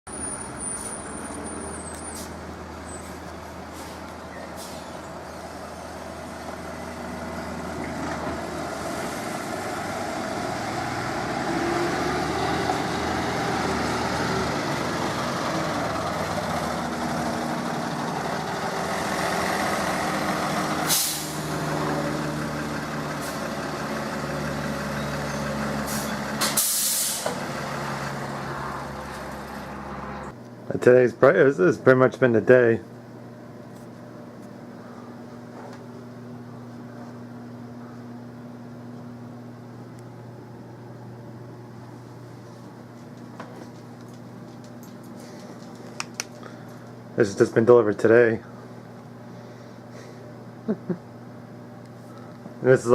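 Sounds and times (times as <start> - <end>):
truck engine running: 0.1 - 30.4
air brake hiss: 3.7 - 5.0, 20.8 - 21.5, 25.8 - 27.4.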